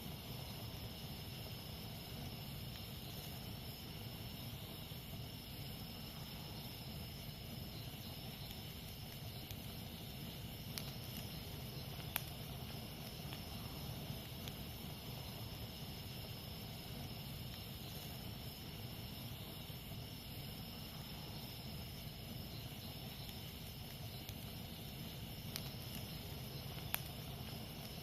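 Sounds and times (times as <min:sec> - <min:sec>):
campfire hissing and crackling: 0:00.0 - 0:28.0
jungle insects droning: 0:00.0 - 0:28.0.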